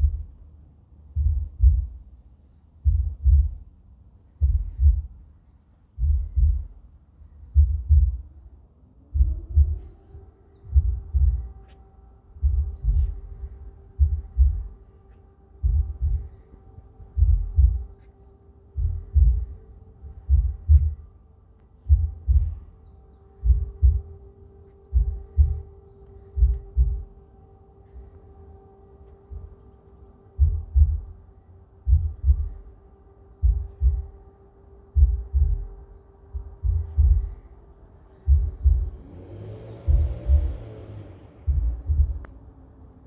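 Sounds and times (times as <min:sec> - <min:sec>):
recorded heartbeat thumping: 0:00.0 - 0:00.5, 0:01.1 - 0:02.2, 0:02.8 - 0:05.3, 0:06.0 - 0:08.5, 0:09.1 - 0:14.9, 0:15.6 - 0:18.1, 0:18.7 - 0:21.1, 0:21.8 - 0:22.7, 0:23.4 - 0:24.3, 0:24.9 - 0:27.2, 0:30.3 - 0:32.7, 0:33.4 - 0:39.2, 0:39.8 - 0:42.3
steady hum: 0:09.2 - 0:39.0, 0:41.5 - 0:42.3.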